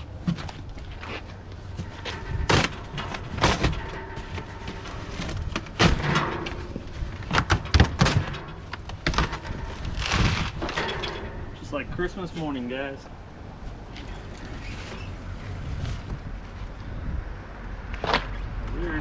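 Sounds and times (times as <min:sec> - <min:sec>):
cardboard rustling and scraping: 0:00.0 - 0:10.8, 0:13.9 - 0:16.7
knocks and thuds: 0:01.8 - 0:11.5.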